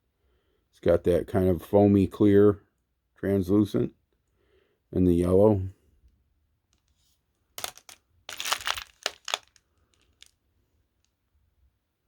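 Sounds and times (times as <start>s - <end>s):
glass marbles clicking: 7.6s - 9.6s.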